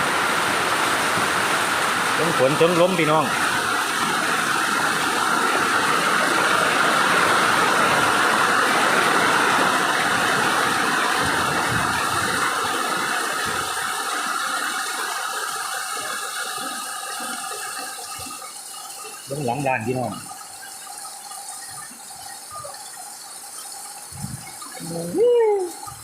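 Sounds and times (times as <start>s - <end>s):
storm rain: 0.0s - 17.4s.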